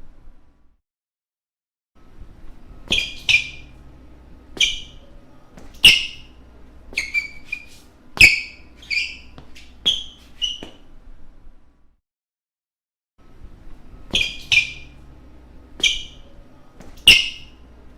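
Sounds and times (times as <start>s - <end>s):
shoes squeaking on a floor: 2.8s - 3.8s, 4.5s - 10.9s, 14.1s - 15.0s, 15.8s - 17.6s.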